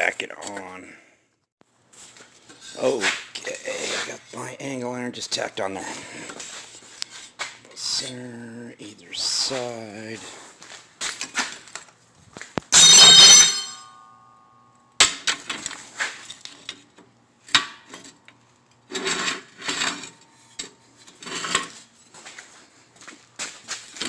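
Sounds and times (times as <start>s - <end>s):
steel parts clanking: 12.8s - 13.8s
loud ringing metal clang: 12.8s - 14.1s.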